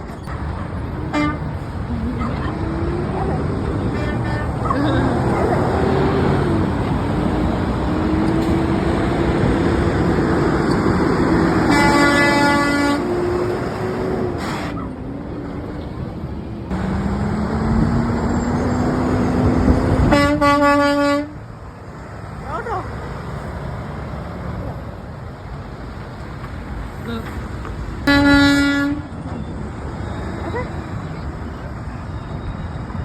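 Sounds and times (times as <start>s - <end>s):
passing trucks engine and road noise: 0.0s - 33.0s
truck air horn honking: 0.9s - 1.6s, 3.8s - 5.2s, 11.6s - 13.6s, 20.0s - 21.4s, 28.0s - 29.1s.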